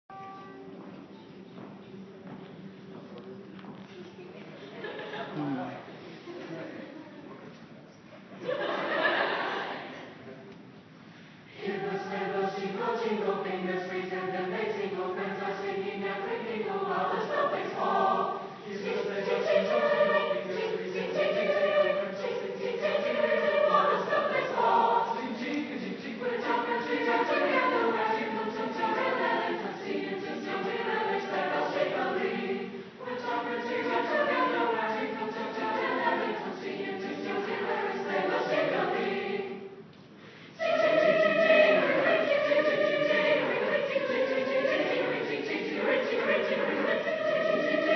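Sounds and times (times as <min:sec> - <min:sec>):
choir singing in parts: 0:08.4 - 0:10.2, 0:11.5 - 0:39.8, 0:40.5 - 0:47.9.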